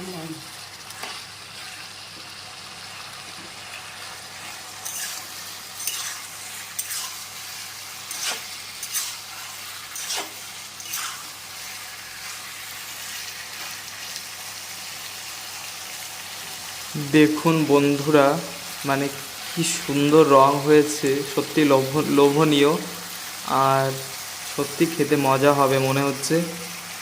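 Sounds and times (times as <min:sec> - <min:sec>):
food sizzling in a pan: 0:00.0 - 0:27.0
spatula scraping a pan: 0:00.9 - 0:02.0, 0:03.5 - 0:13.8.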